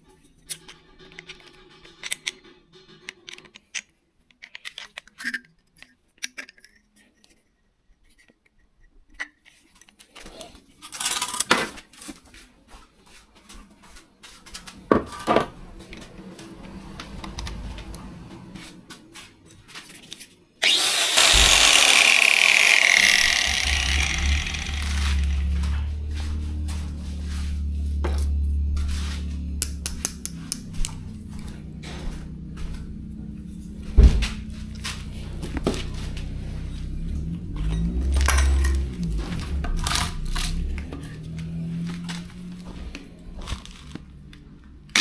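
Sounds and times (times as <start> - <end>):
clicks and knocks of handling parts: 0.4 - 7.4
power tool running: 20.6 - 27.1, 33.9 - 41.5.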